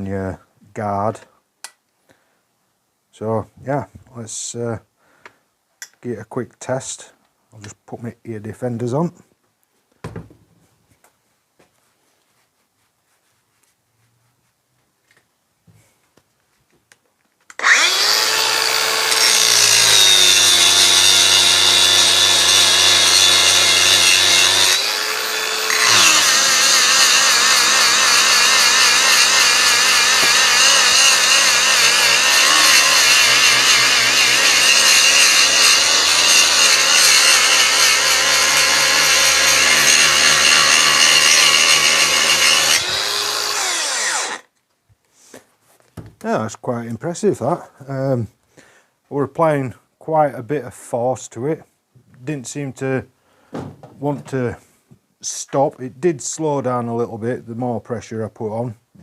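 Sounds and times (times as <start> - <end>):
angle grinder grinding: 17.5 - 44.5.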